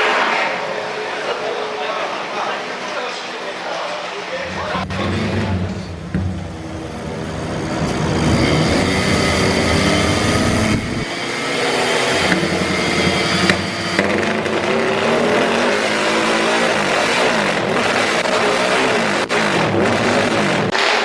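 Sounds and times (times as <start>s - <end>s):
motorcycle engine revving: 4.4s - 21.0s.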